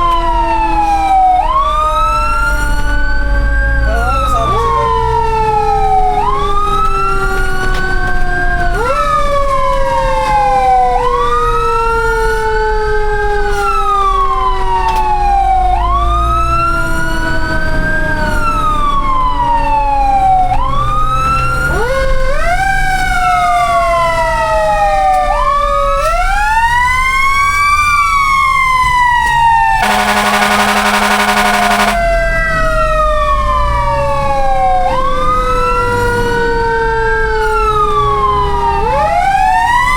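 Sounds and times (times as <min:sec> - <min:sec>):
fire truck sirens wailing: 0:00.0 - 0:39.9
horn blasting: 0:29.8 - 0:32.1.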